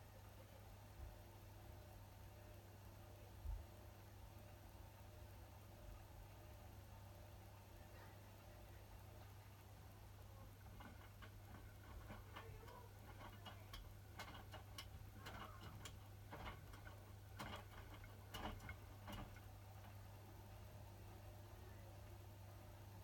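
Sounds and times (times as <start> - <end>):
washing machine running: 4.2 - 23.0
faint clicks and taps: 10.2 - 20.1.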